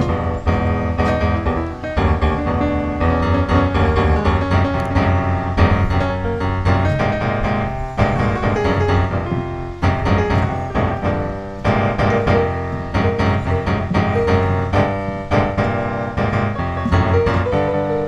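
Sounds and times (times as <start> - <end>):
piano music: 0.0 - 18.0.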